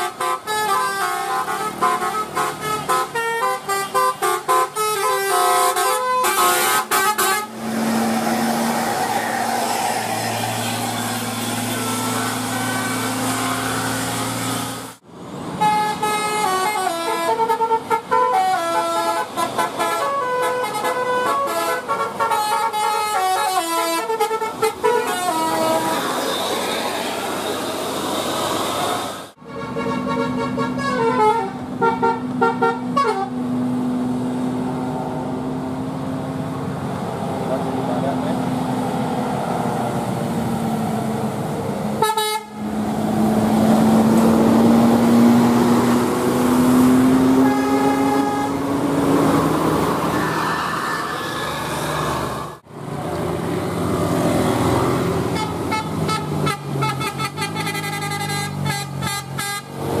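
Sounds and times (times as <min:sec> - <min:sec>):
multi-tone bus horn tune: 0:00.0 - 0:07.7, 0:10.3 - 0:14.9, 0:15.6 - 0:26.8, 0:29.4 - 0:33.5, 0:42.0 - 0:42.8, 0:45.9 - 0:49.0, 0:55.2 - 0:59.8.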